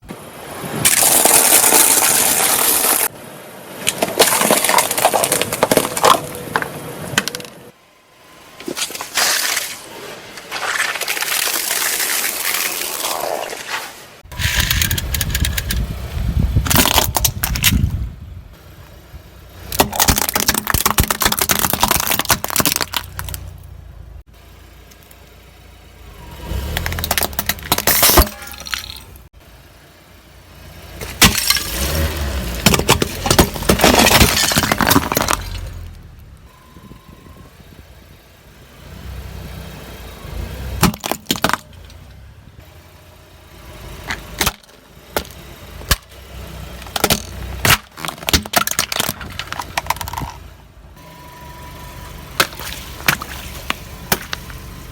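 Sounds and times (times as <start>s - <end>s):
low hum of car: 0.0s - 54.9s
tyres crushing objects: 0.7s - 3.1s, 3.8s - 7.8s, 8.6s - 15.6s, 16.6s - 18.0s, 19.6s - 23.6s, 26.5s - 29.3s, 31.0s - 36.0s, 40.7s - 42.1s, 44.0s - 50.6s, 52.4s - 54.6s.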